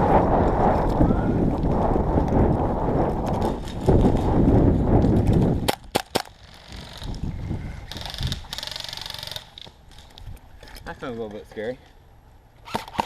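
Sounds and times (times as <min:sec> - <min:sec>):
wind buffeting microphone: 0:00.0 - 0:08.8
airsoft gun shots: 0:12.6 - 0:13.0.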